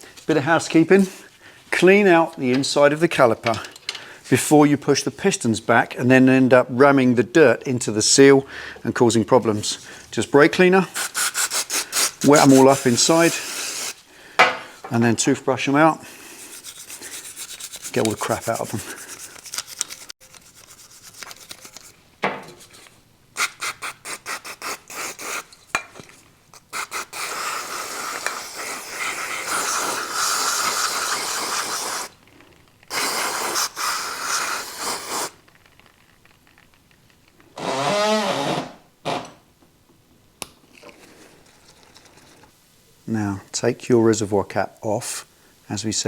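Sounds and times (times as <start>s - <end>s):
toothbrush scrubbing metal: 10.9s - 14.0s, 16.3s - 21.9s, 26.6s - 32.1s
aerosol spray hissing: 10.9s - 14.1s, 26.7s - 32.1s, 32.9s - 35.4s.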